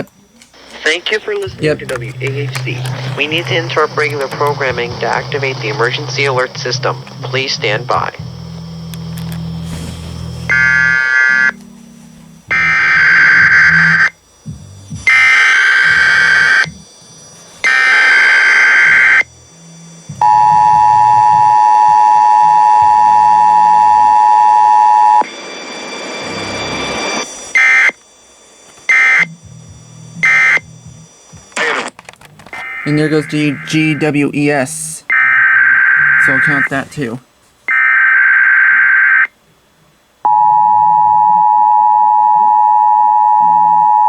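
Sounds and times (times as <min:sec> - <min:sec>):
warbling data bursts: 0:00.0 - 0:11.6, 0:12.3 - 0:31.9, 0:32.5 - 0:37.2
faint radio hiss: 0:00.0 - 0:40.3
two-tone attention signal: 0:20.1 - 0:27.9.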